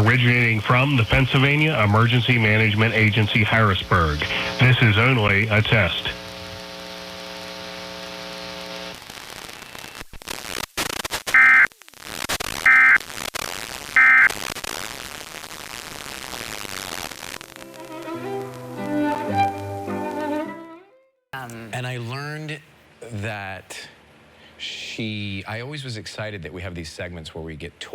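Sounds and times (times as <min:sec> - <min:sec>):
steady buzzing hum: 0:00.0 - 0:09.4
radio static and hiss: 0:00.0 - 0:19.8
digital data tone screech: 0:11.3 - 0:11.7, 0:12.6 - 0:13.0, 0:14.0 - 0:14.3
music: 0:17.6 - 0:21.2.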